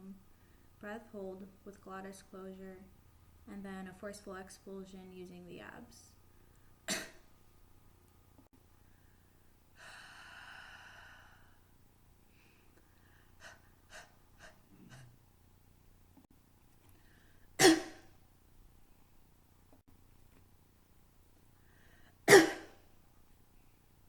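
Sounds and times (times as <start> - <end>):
person coughing: 6.9 - 7.2, 17.6 - 18.1, 22.3 - 22.8
person breathing in deeply: 8.9 - 11.6.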